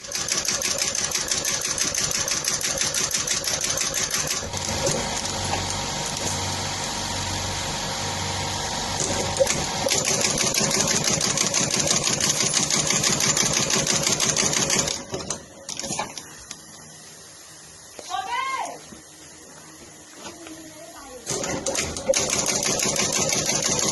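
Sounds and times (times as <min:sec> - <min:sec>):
sewing machine stitching: 0:00.0 - 0:06.4, 0:09.0 - 0:16.0, 0:21.3 - 0:23.9.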